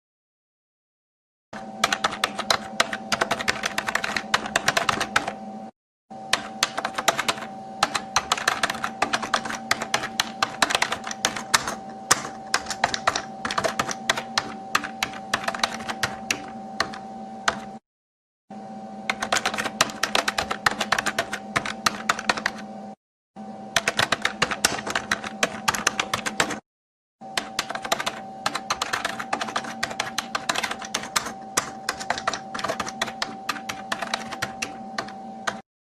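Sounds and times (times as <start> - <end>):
fast typing on a keyboard: 1.6 - 5.4, 6.3 - 17.8, 19.1 - 22.6, 23.8 - 26.6, 27.4 - 35.6
steady hum: 1.6 - 17.8, 18.5 - 26.6, 27.2 - 35.6.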